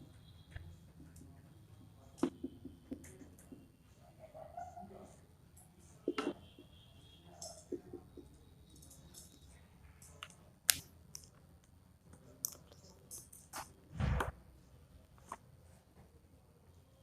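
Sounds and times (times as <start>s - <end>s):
clicks and taps of pens and paper: 10.0s - 13.6s.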